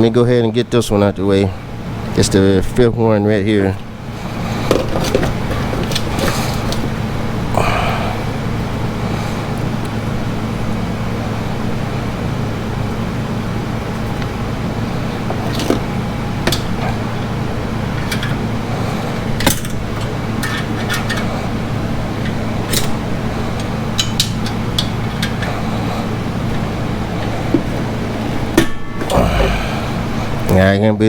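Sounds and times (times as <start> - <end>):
steady low hum: 0.0 - 31.0
handling noise rumble: 25.4 - 30.5.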